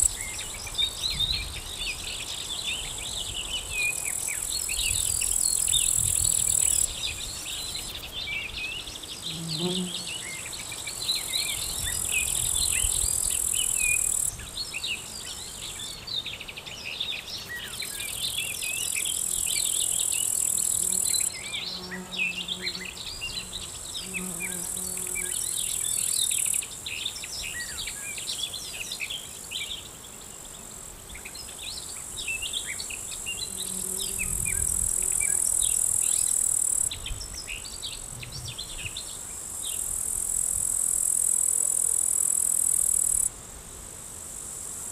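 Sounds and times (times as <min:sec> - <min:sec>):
insects chirping: 0:00.0 - 0:44.9
bee buzzing: 0:09.2 - 0:14.2, 0:19.1 - 0:25.8, 0:33.2 - 0:36.9
insect shrill trill: 0:10.9 - 0:14.4, 0:33.4 - 0:36.9, 0:39.7 - 0:43.3.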